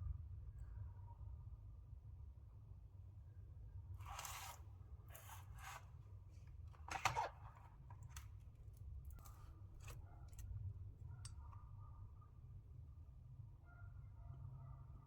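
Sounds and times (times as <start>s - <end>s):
scratchy snipping noises: 4.0s - 5.9s.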